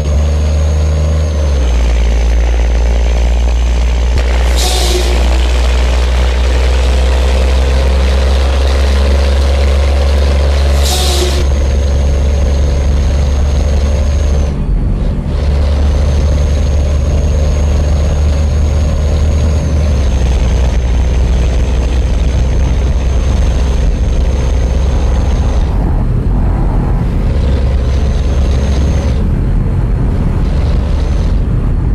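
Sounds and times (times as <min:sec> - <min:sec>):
truck engine rumbling: 0:00.0 - 0:31.9
high whistle: 0:04.4 - 0:05.6.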